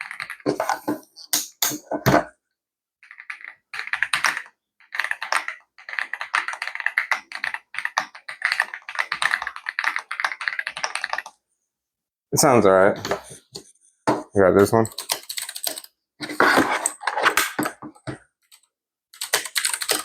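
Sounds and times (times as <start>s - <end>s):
mechanical keyboard typing: 0.0s - 0.5s, 3.0s - 11.3s, 14.8s - 15.9s, 19.2s - 20.0s.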